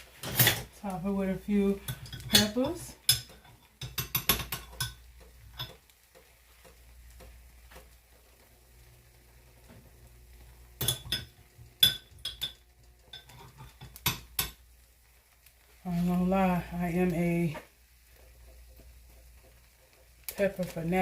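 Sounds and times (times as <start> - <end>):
metal utensil clinking on dishes: 1.8 - 5.0, 10.8 - 14.6.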